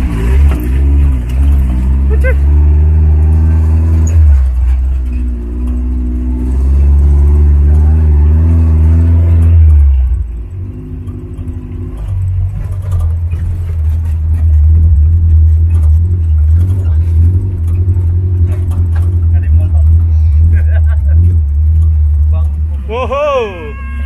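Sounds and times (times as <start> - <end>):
off-road vehicle engine rumbling: 0.0 - 24.0.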